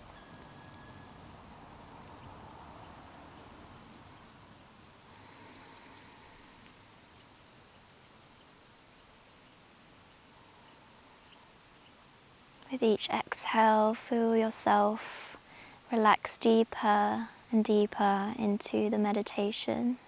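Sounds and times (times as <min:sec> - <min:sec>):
faint bird chirps: 0:00.1 - 0:07.3.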